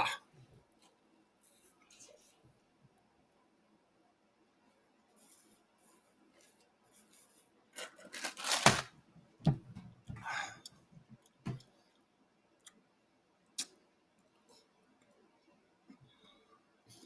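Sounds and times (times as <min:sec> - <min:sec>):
rustling: 0:07.8 - 0:08.9.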